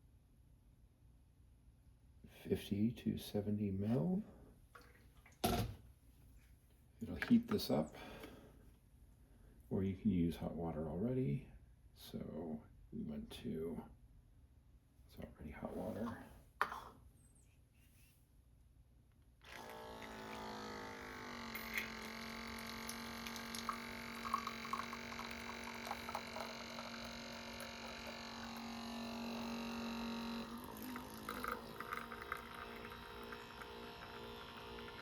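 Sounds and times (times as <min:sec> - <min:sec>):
espresso machine pump humming: 0:19.4 - 0:35.0
crackles of liquid flowing: 0:21.9 - 0:28.2.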